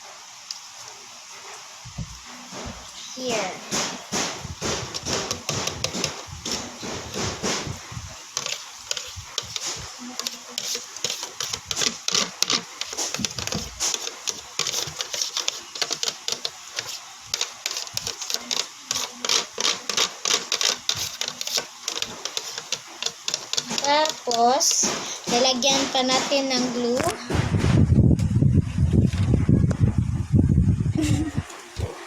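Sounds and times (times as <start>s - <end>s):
utensil scraping plastic box: 3.4s - 27.1s.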